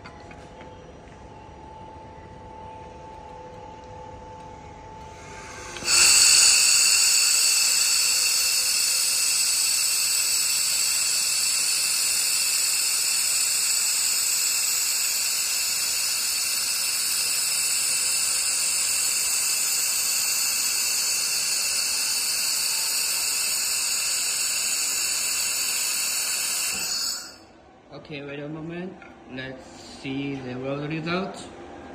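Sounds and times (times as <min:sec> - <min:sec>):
laser welder hissing: 0:05.1 - 0:27.4.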